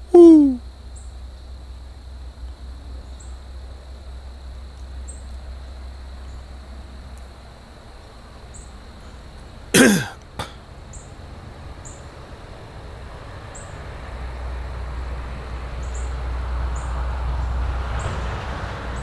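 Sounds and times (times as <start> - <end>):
faint high chirps: 0.0 - 0.6
man coughing: 9.8 - 10.5.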